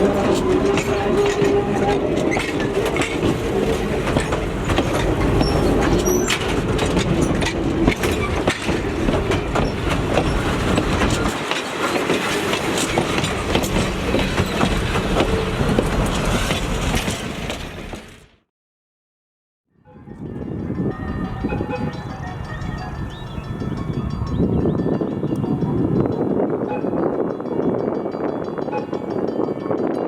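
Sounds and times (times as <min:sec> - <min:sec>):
wheels clicking over rail joints: 0:00.0 - 0:18.3
train rumbling on track: 0:00.0 - 0:18.5, 0:19.8 - 0:30.0.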